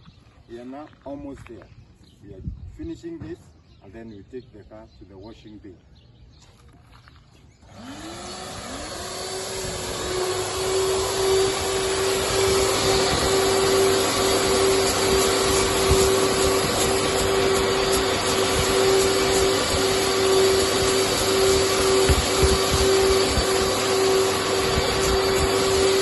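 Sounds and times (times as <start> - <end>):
vacuum cleaner motor whine: 7.6 - 26.0
rush of air: 9.4 - 26.0.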